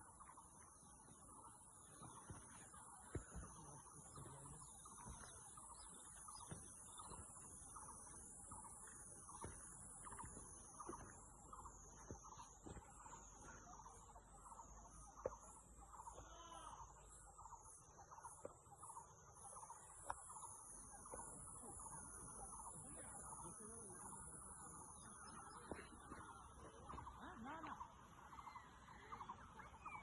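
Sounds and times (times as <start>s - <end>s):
insect chirps: 0.0s - 30.0s.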